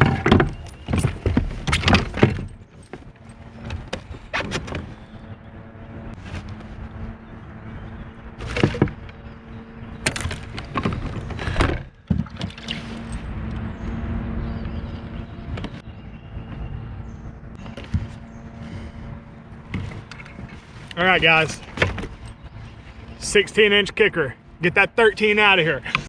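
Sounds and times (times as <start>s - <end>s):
knocks and clattering thumps: 0.0s - 5.0s, 8.4s - 9.2s, 10.0s - 13.0s, 19.7s - 20.7s, 21.4s - 22.3s
steady low hum: 0.0s - 26.0s.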